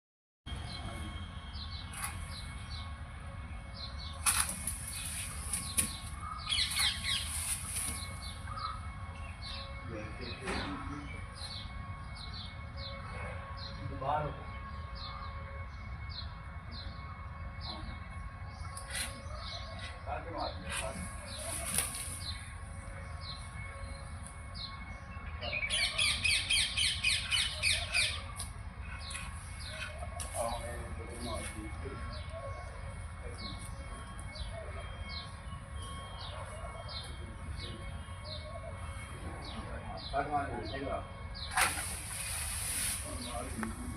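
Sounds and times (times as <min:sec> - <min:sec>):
small birds chirping: 0:00.6 - 0:43.9
bird squawking: 0:06.1 - 0:07.3, 0:08.2 - 0:09.8, 0:25.5 - 0:30.6.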